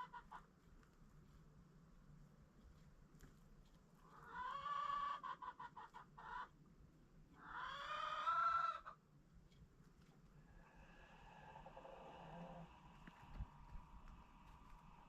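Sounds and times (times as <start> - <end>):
chicken calling and clucking: 0.0 - 0.6, 4.0 - 6.6, 7.3 - 9.0, 10.4 - 15.0.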